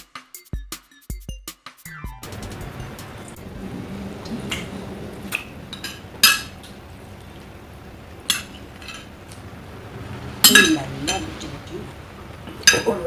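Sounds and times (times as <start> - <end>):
cutlery clinking against plates: 4.2 - 7.4, 8.2 - 9.4, 10.4 - 11.9, 12.5 - 13.0.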